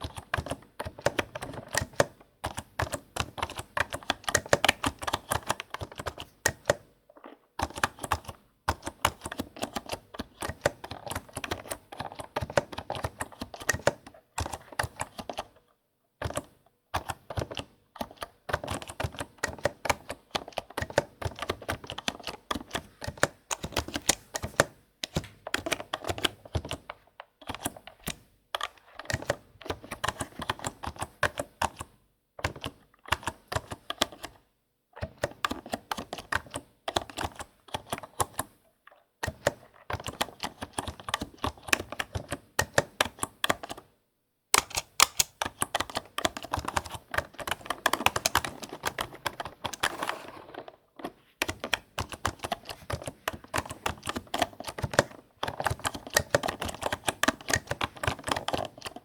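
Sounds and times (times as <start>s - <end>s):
keyboard key clicks: 44.6s - 50.6s.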